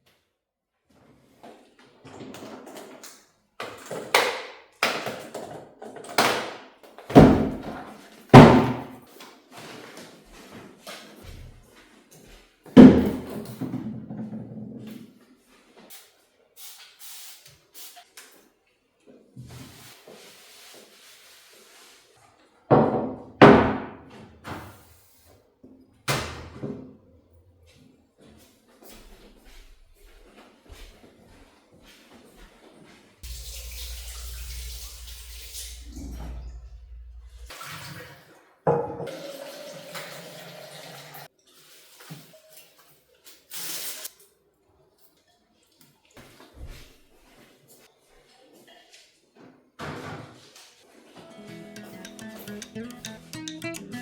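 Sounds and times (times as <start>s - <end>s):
household objects knocking and thudding: 7.1s - 9.0s, 22.7s - 24.0s.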